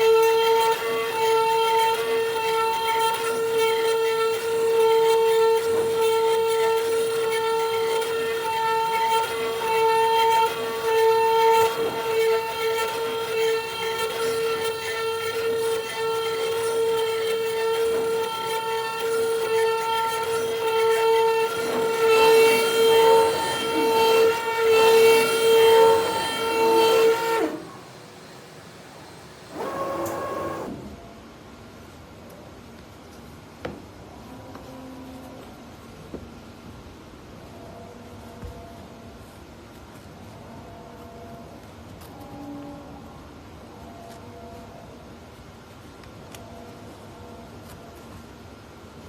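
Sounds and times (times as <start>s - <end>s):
cutting machine whine: 0.0s - 31.0s.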